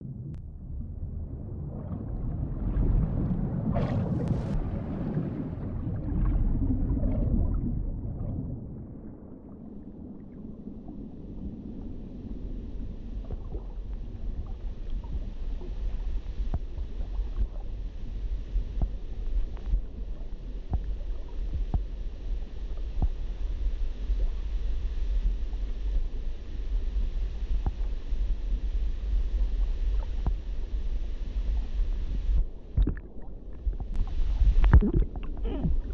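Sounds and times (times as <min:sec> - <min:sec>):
underwater churning rumble: 0:00.0 - 0:35.9
bubble pops: 0:32.8 - 0:33.1, 0:34.6 - 0:35.7.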